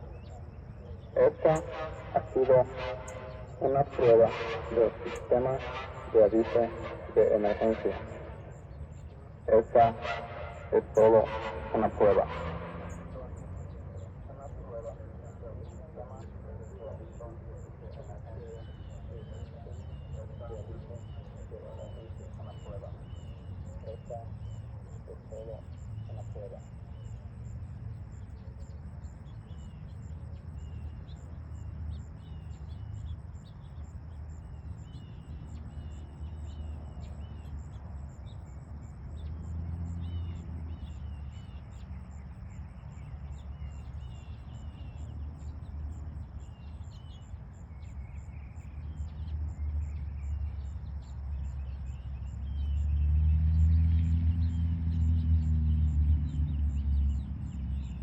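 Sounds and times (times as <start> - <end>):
low rumble of traffic: 0.0 - 58.0
small birds chirping: 0.0 - 58.0
vehicle engine: 0.0 - 58.0.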